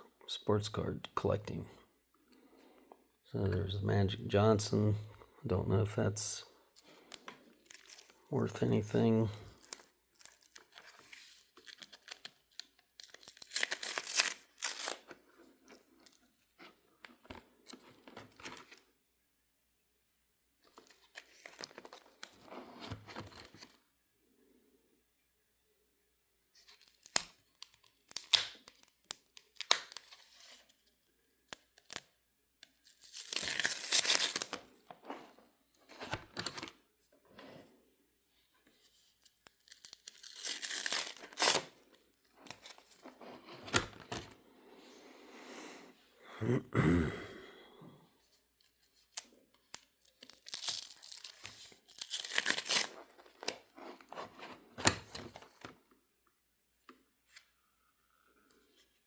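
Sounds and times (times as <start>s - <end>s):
trading cards rustling: 6.0s - 15.2s, 20.7s - 23.7s, 32.8s - 36.8s, 38.7s - 44.4s, 49.8s - 55.7s.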